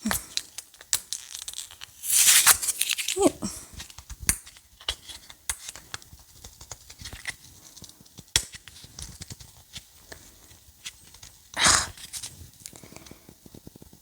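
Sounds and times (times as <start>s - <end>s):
seasoning packet crinkling: 1.1s - 3.4s.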